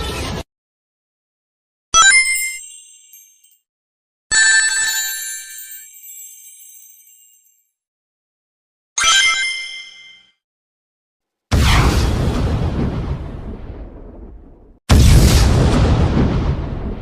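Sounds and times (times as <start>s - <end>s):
shimmering magic chime: 2.3s - 3.6s, 5.4s - 7.6s.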